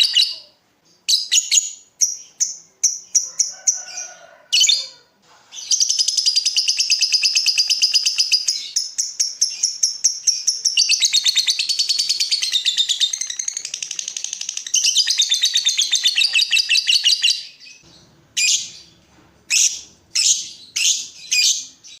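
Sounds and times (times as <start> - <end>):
lovebird chattering: 5.6 - 18.9, 19.5 - 22.0
sharp bird chirps: 5.6 - 22.0.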